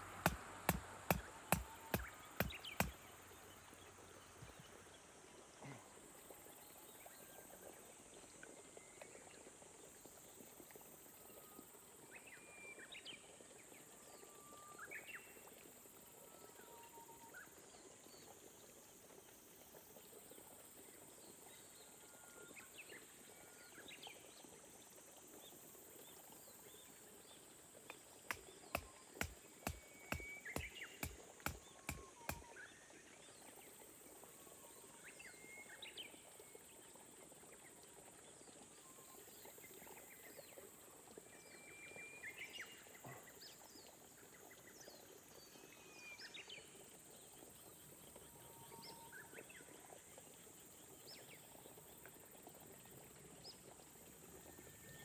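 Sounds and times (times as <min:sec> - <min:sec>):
sharp clicks: 0:00.2 - 0:03.0.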